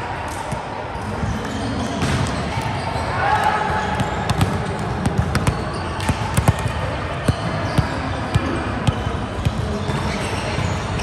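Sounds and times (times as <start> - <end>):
sports hall background noise: 0.0 - 11.0
volleyballs hit and bouncing: 0.3 - 11.0.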